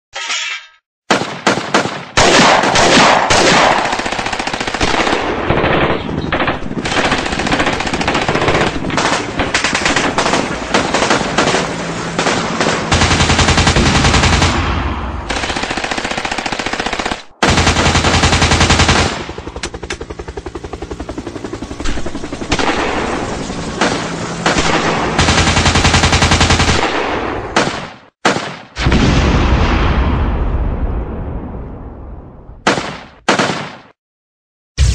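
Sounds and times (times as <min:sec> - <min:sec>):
single gunshots: 0:01.1 - 0:03.9, 0:26.8 - 0:29.9, 0:32.6 - 0:34.0
automatic gunfire: 0:01.1 - 0:19.4, 0:22.5 - 0:28.8, 0:32.7 - 0:33.9.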